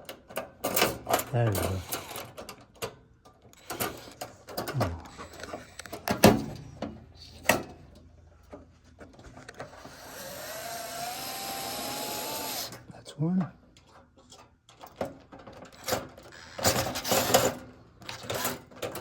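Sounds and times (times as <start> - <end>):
power screwdriver whine: 9.7 - 12.8.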